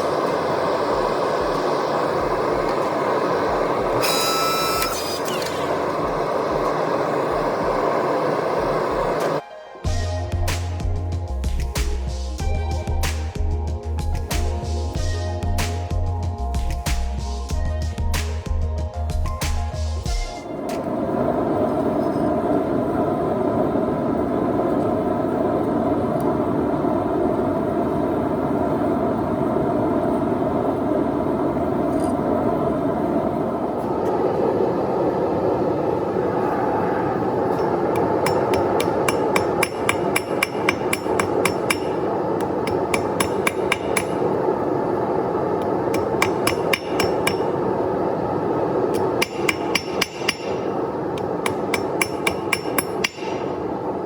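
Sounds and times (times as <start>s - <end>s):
steady rushing noise: 0.0s - 4.0s, 5.6s - 54.0s
hammer striking steel on anvil: 37.6s - 44.6s, 45.9s - 47.8s, 48.9s - 53.8s.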